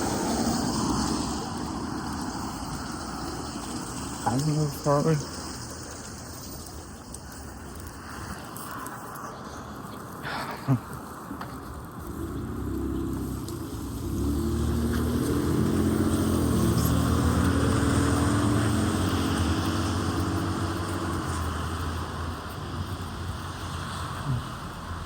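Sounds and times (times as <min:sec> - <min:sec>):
tyre hiss on wet street: 0:00.0 - 0:25.0
vehicle engine driving past: 0:12.0 - 0:25.0.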